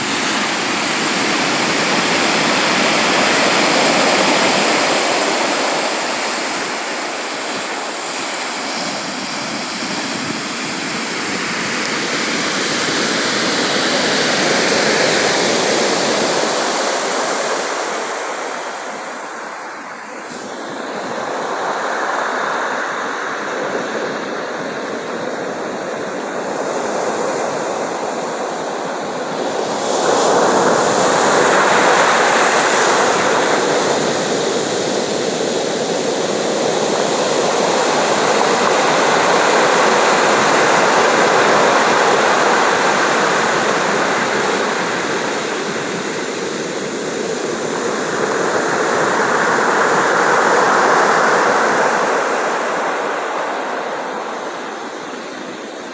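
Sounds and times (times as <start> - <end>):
waves breaking on shore: 0.0 - 55.9.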